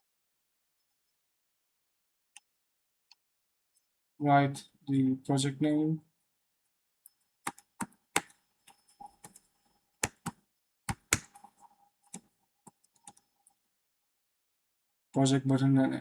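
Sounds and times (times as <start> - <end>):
typing on computer keyboard: 10.0 - 10.3, 10.9 - 11.4.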